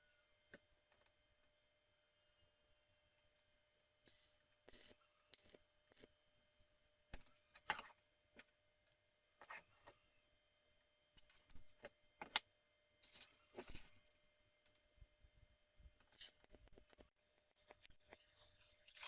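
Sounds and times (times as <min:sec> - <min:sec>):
small metal parts clinking: 0:11.2 - 0:12.4, 0:13.0 - 0:14.1.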